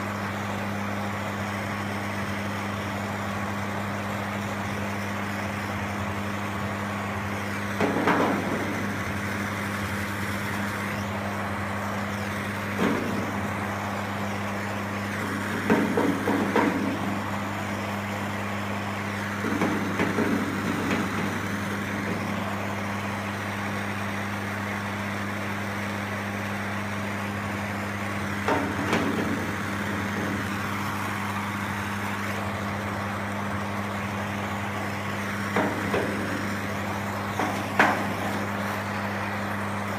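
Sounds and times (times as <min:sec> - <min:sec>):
steady hum and hiss: 0:00.0 - 0:39.9
paddle rubbing and tapping metal: 0:15.2 - 0:17.4, 0:35.4 - 0:39.0.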